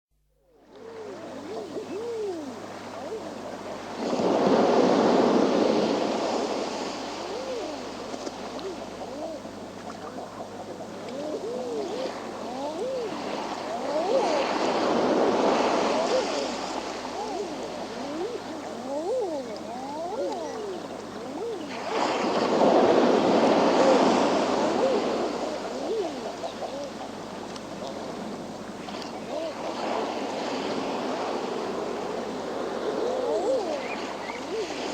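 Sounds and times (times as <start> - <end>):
seabird calls: 0.5 - 34.9
wave breaking on rocky shore: 3.6 - 8.8, 11.6 - 19.4, 20.3 - 26.6
animal calls: 7.1 - 22.3.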